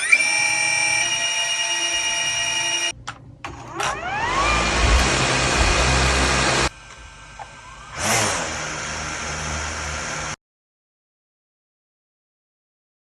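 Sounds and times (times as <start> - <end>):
drone propellers whining: 3.7 - 10.4.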